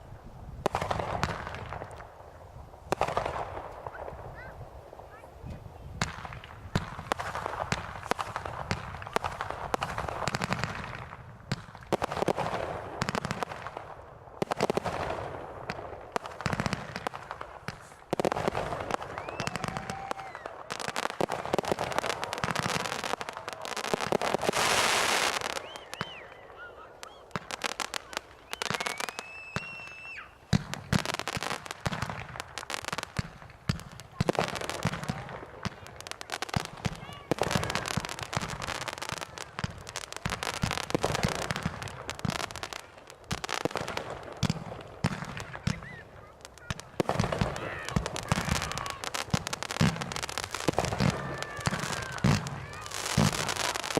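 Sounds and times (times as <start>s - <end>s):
fireworks bangs and crackles: 0.0s - 53.9s
fireworks whistling: 0.6s - 53.9s
spectators' voices: 3.6s - 6.1s, 17.7s - 30.5s, 33.9s - 43.4s, 45.1s - 53.9s
fireworks hissing: 14.4s - 53.9s.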